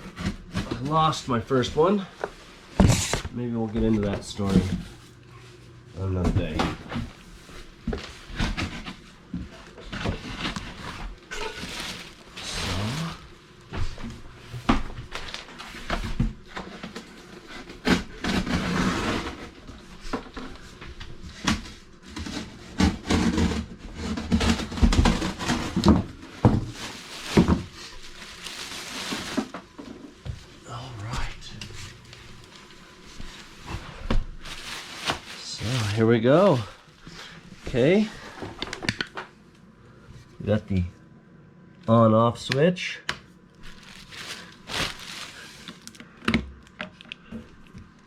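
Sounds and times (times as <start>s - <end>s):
cardboard scraping and rustling: 6.2s - 30.5s, 31.8s - 38.6s, 43.6s - 46.0s.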